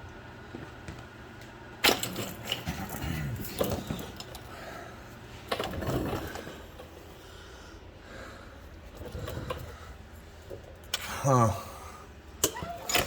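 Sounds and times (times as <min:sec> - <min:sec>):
person breathing: 0:04.4 - 0:05.2, 0:06.5 - 0:10.4.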